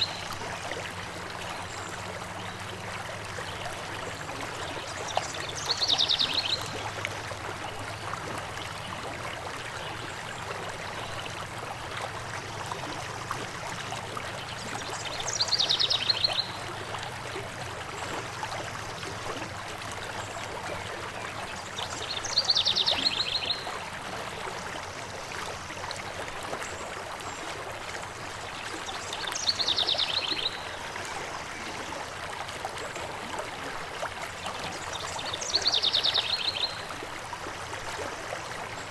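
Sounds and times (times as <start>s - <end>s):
stream running over rocks: 0.0s - 38.9s.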